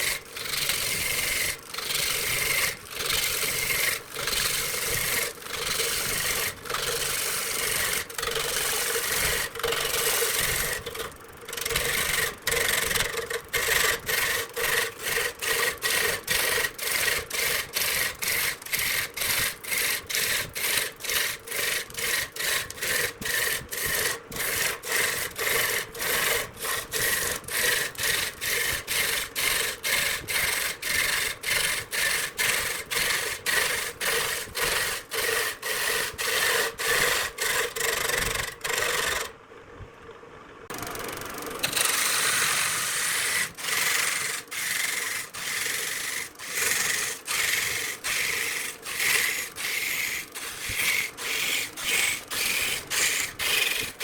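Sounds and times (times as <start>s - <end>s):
hand tool scraping wood: 0.0s - 39.3s, 41.6s - 54.0s.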